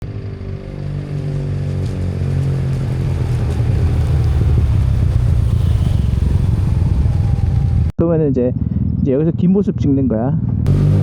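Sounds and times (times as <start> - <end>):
scooter engine running: 0.0 - 7.9.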